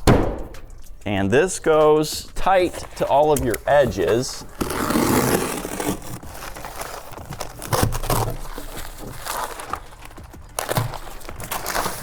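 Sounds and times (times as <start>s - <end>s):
roofing sheet crinkling: 2.4s - 12.0s.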